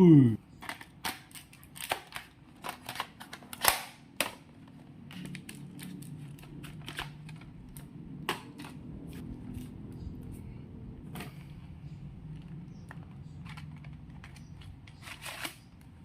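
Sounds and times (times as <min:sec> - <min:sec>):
plastic mechanisms clicking: 0:12.4 - 0:15.9.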